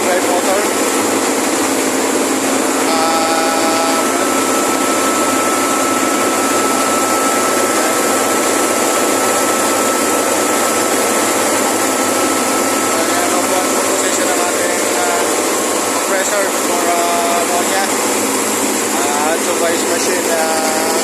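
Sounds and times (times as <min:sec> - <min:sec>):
refrigeration compressor running: 0:00.0 - 0:21.0.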